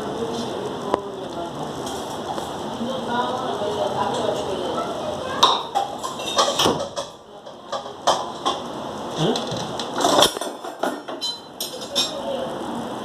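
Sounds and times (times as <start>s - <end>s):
pot and metal utensils clinking: 5.4s - 8.7s, 9.3s - 12.2s.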